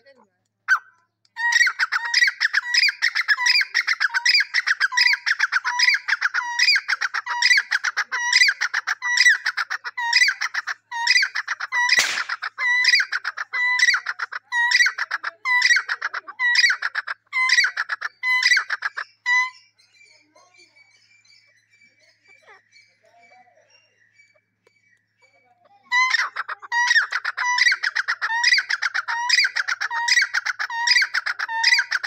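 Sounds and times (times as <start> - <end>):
partridge calling: 0.7 - 24.5, 25.9 - 32.0
sharp click: 12.0 - 12.4.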